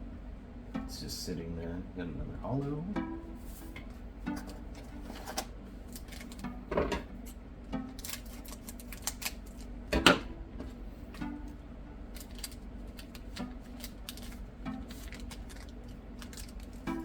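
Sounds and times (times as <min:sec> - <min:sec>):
trading cards flipped through: 0:12.2 - 0:16.8.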